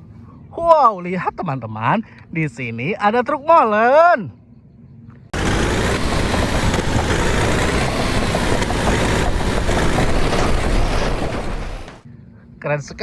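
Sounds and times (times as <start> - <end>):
truck engine rumbling: 5.3 - 12.0.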